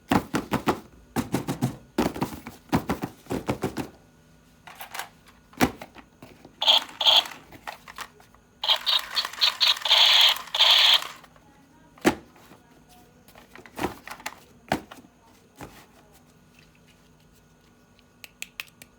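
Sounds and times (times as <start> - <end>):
scratchy crackling packaging: 6.6 - 7.9, 8.6 - 11.2
plastic toy pieces clicking: 6.6 - 11.3.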